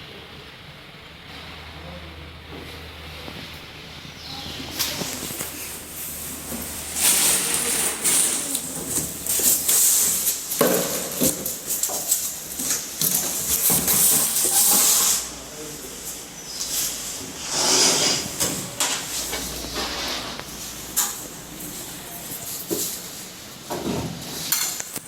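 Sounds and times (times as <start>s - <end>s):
rustling and handling noise: 2.6s - 25.0s
hiss: 17.4s - 18.4s.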